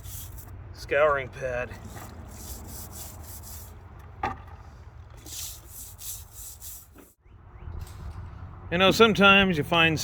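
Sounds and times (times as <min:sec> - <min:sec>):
scrubbing on metal: 0:00.0 - 0:00.6, 0:01.7 - 0:04.0, 0:05.1 - 0:07.2.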